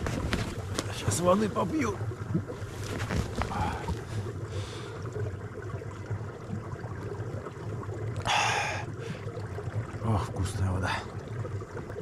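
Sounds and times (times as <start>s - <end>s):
man drinking water: 2.2s - 5.0s.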